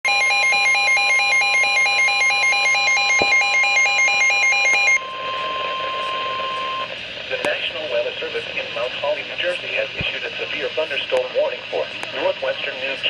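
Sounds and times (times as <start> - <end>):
two-tone electronic alarm warbling: 0.1 - 6.9.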